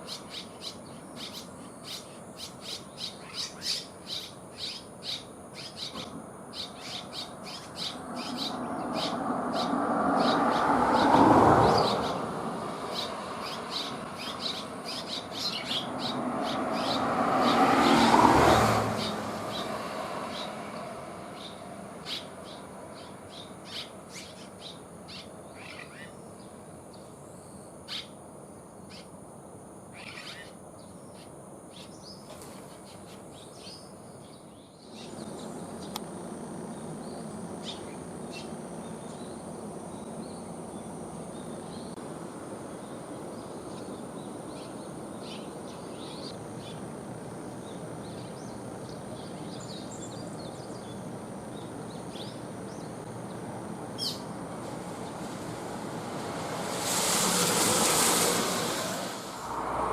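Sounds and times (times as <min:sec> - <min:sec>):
swallows chirping: 0:00.0 - 0:11.1, 0:11.7 - 0:17.6, 0:21.4 - 0:26.6, 0:42.8 - 0:46.9, 0:47.5 - 0:54.3
outdoor background hiss: 0:00.0 - 0:59.9.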